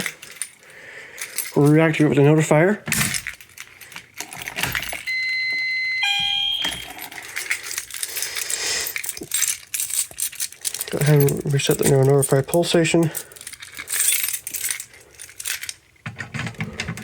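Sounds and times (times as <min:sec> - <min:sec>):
metal clicks and rattling: 0:02.9 - 0:05.1, 0:06.6 - 0:17.0
electronic alarm tone: 0:05.0 - 0:07.1.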